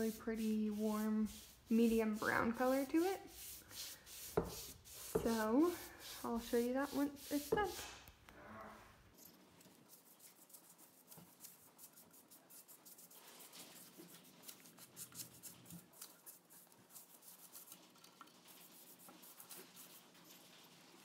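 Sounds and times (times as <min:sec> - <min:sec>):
paintbrush rubbing on wood: 0:00.0 - 0:08.0, 0:09.7 - 0:21.0
small ticks and scrapes: 0:09.1 - 0:21.0.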